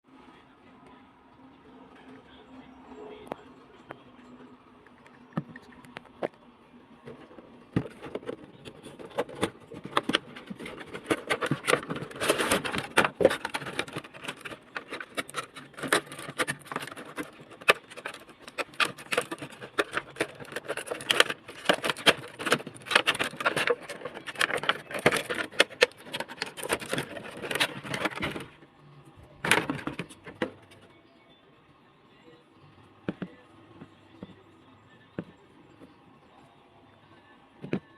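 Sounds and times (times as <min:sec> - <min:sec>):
plastic packaging crinkling: 0:07.8 - 0:28.6.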